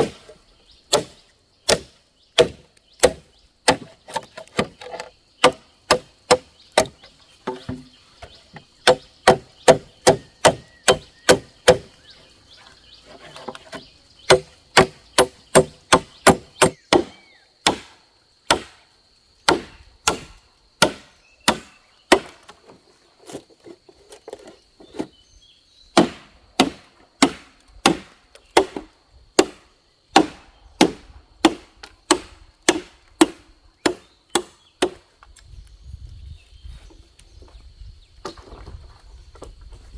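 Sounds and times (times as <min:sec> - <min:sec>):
chopping into bamboo: 0:00.0 - 0:12.0, 0:13.2 - 0:18.8, 0:19.4 - 0:23.4, 0:26.0 - 0:35.4.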